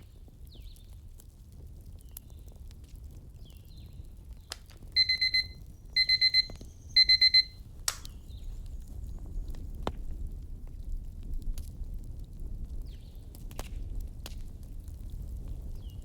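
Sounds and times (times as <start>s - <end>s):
fire crackling and popping: 0.0s - 5.9s, 7.9s - 16.0s
digital alarm beeping: 5.0s - 7.5s.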